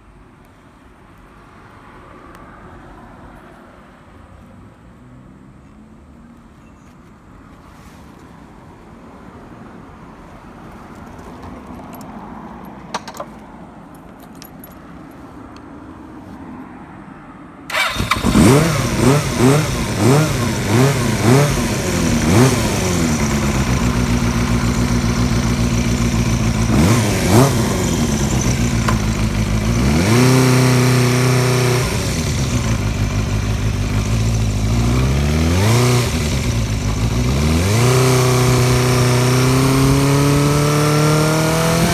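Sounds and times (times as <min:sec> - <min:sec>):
motorcycle engine revving: 0:17.7 - 0:41.9.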